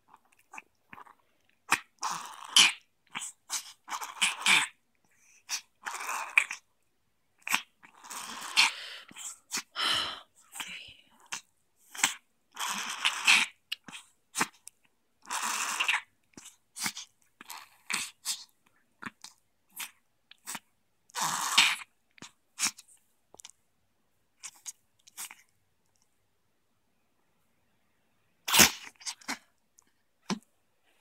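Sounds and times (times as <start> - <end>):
dog sneezing and snorting: 10.5 - 14.6, 15.3 - 18.5, 21.2 - 21.9, 28.5 - 29.5.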